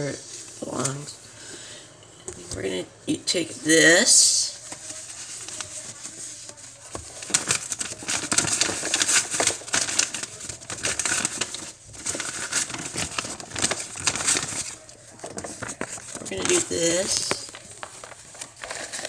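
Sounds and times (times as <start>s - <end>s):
packaging crinkling and rustling: 4.6s - 19.0s.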